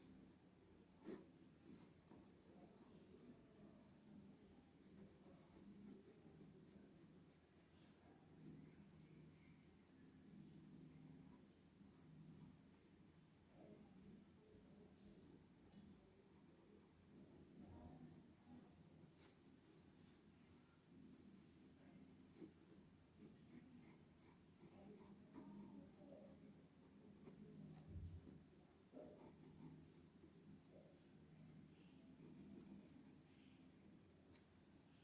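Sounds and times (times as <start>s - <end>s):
faint room hum: 0.0s - 35.0s
pencil scratching on paper: 1.0s - 2.9s, 4.8s - 9.6s, 15.2s - 19.5s, 21.1s - 22.6s, 23.2s - 27.8s, 28.7s - 30.1s, 32.2s - 34.5s.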